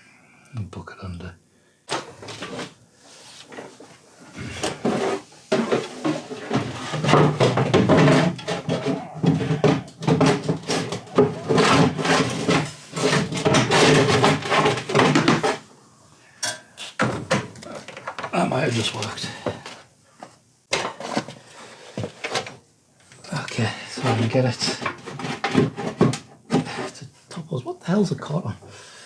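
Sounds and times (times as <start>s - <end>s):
heavy axle scraping across floor: 2.2s - 15.6s
metal knocks and clunks: 4.6s - 15.6s.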